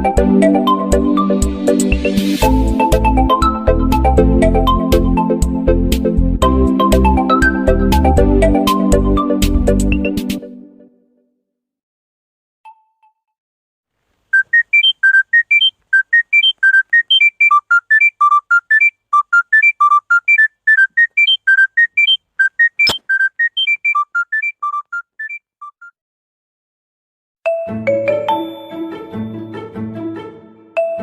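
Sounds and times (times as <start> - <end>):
sharp click: 22.8 - 23.1.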